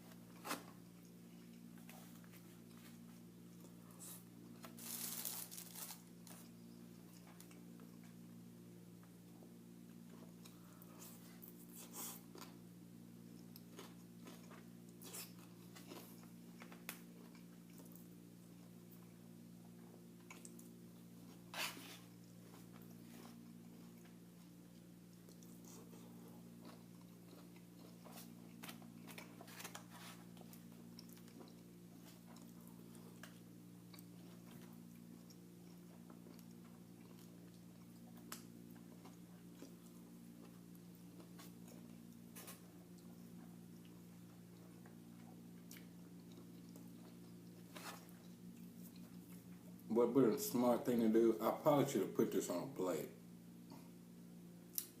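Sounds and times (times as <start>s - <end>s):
steady low hum: 0.0s - 55.0s
chewing and biting food: 13.2s - 49.9s.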